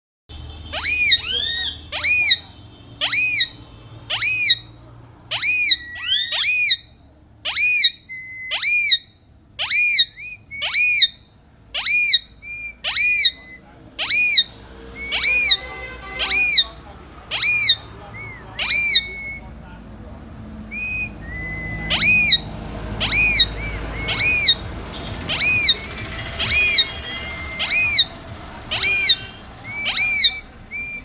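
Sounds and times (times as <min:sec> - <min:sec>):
parrot squawking: 0:00.6 - 0:19.5, 0:20.7 - 0:31.0
whistled notes: 0:12.4 - 0:15.7, 0:17.4 - 0:19.6, 0:20.7 - 0:22.4, 0:25.3 - 0:28.2, 0:28.8 - 0:31.0.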